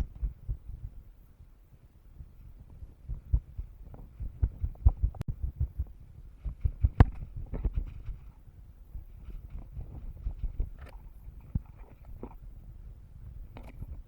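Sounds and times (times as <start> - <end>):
gear knocking on microphone: 3.1 - 8.4.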